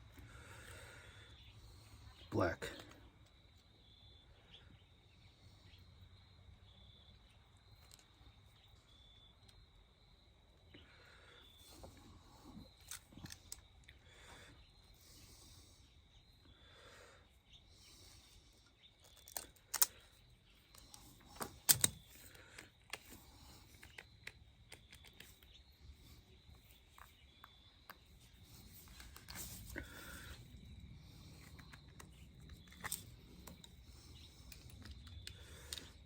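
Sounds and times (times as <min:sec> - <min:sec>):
hand tools clicking on wire: 0:19.0 - 0:20.0, 0:20.7 - 0:25.5.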